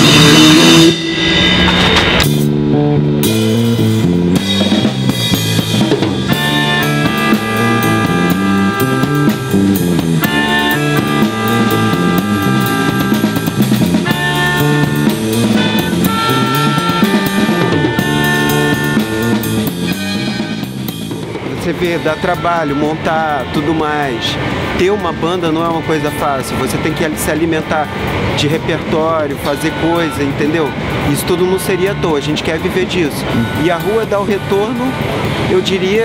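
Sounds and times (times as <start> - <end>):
drum kit beat: 0.0 - 26.4
bass line: 0.0 - 36.0
higher melodic line: 0.0 - 36.0.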